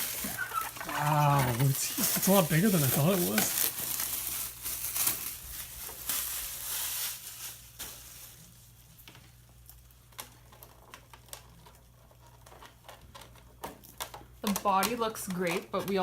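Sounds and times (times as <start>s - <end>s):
packaging rustling and crinkling: 0.0s - 16.0s.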